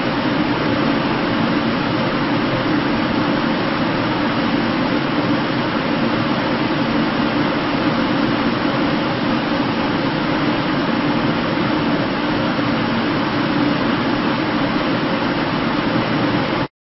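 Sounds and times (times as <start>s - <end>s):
ventilation system blowing air: 0.0s - 16.7s.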